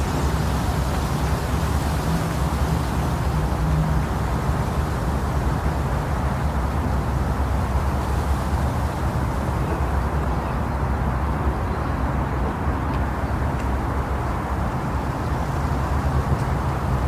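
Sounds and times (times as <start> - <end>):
deep white noise hiss: 0.0 - 17.0.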